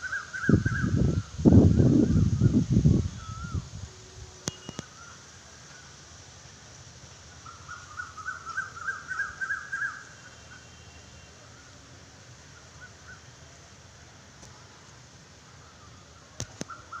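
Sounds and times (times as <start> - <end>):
sharp clicks: 4.4 - 4.9.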